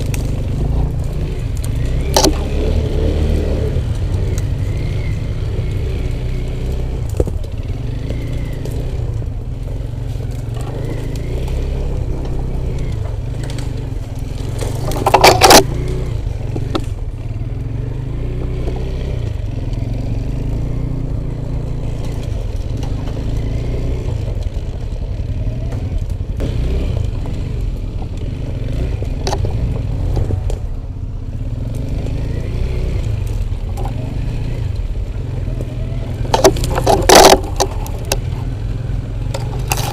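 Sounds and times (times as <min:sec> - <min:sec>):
motorcycle engine running: 0:00.0 - 0:39.9
loud clatter: 0:14.5 - 0:15.7, 0:36.3 - 0:38.4.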